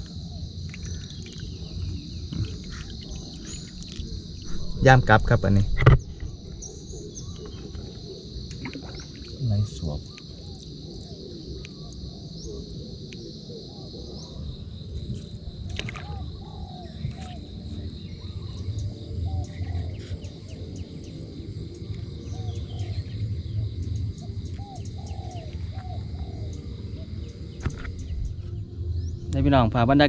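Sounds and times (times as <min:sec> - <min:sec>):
high insect drone: 0:00.0 - 0:30.0
low rumble: 0:04.2 - 0:06.6, 0:25.4 - 0:30.0.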